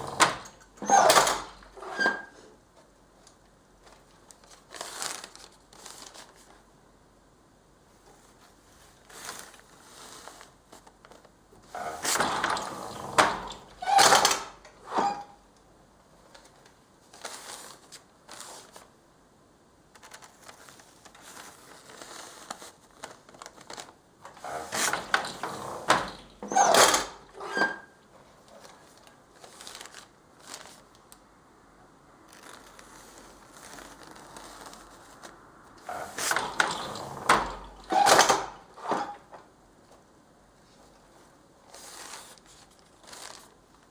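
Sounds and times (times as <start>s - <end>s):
paper rustling and crinkling: 3.8s - 6.7s, 8.1s - 11.4s, 16.3s - 18.9s, 19.9s - 24.7s, 28.5s - 31.2s, 32.3s - 36.6s, 40.7s - 43.9s.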